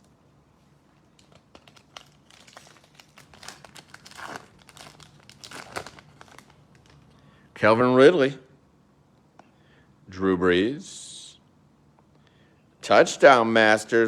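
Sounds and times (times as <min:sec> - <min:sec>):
foil wrapper crinkling and tearing: 0:01.0 - 0:07.2.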